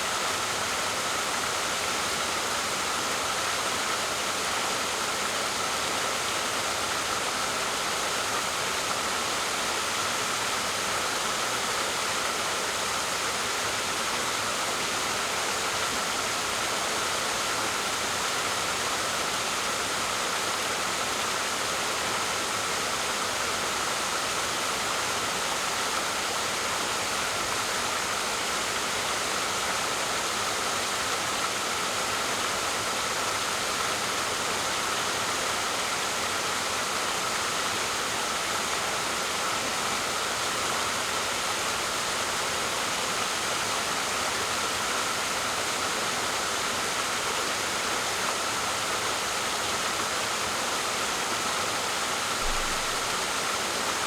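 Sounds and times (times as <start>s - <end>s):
waterfall pouring: 52.4s - 54.0s.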